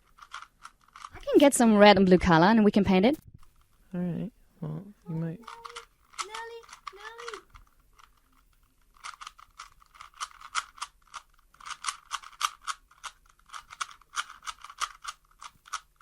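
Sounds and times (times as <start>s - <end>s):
puzzle cube clicking: 0.0s - 1.6s, 5.4s - 16.0s.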